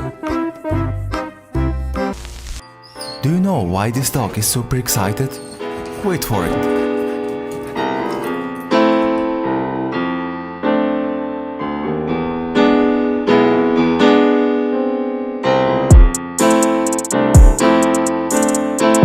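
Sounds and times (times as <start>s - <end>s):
slow piano chords: 0.0s - 19.0s.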